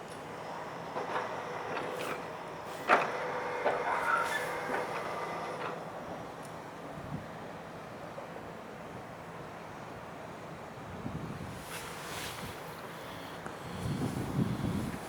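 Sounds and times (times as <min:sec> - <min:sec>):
train wheels knocking over rail joints: 0:00.9 - 0:06.0.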